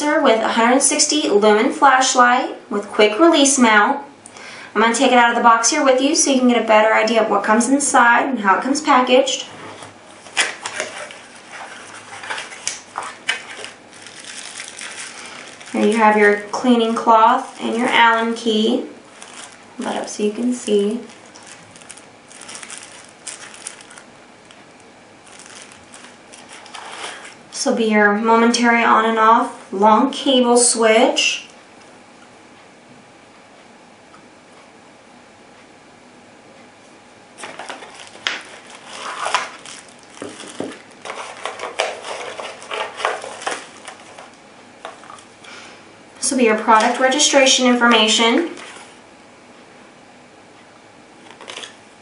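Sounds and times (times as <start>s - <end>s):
packaging rustling and crinkling: 9.7s - 27.4s, 37.4s - 45.4s, 48.4s - 49.0s, 51.2s - 51.8s.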